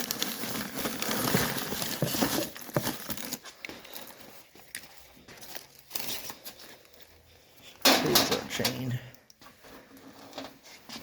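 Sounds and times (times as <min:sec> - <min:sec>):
packaging crinkling and tearing: 0:00.0 - 0:04.1.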